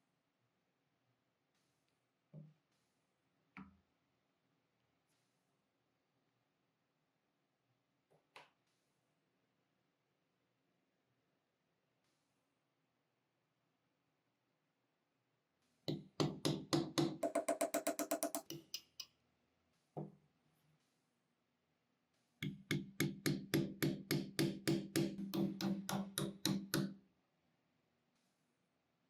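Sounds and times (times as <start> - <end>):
hammer tapping metal punch: 15.9 - 19.0, 22.4 - 26.9.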